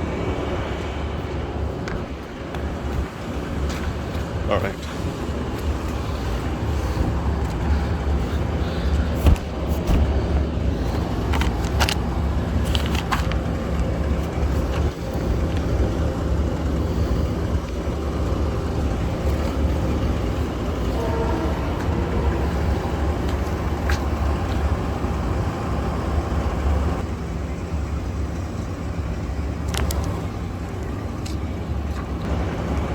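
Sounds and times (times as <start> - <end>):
diesel engine droning: 0.0 - 32.9.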